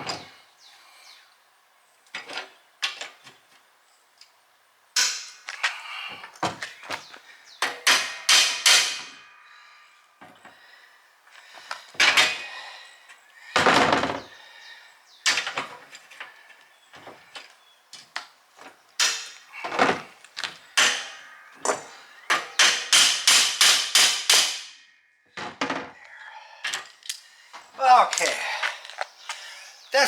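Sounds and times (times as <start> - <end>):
hammer strikes on cart: 22.4 - 24.6.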